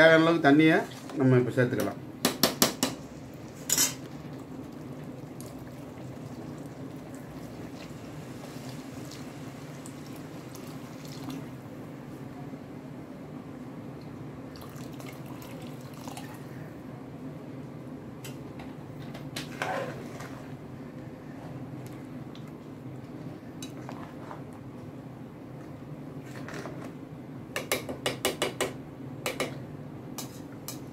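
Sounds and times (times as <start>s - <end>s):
water pouring into a pot: 5.2s - 11.5s, 14.5s - 16.4s.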